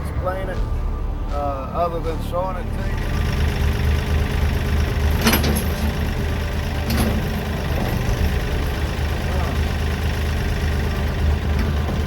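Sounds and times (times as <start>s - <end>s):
tractor engine idling: 0.0s - 12.0s
sharp metallic clinks: 3.2s - 10.1s.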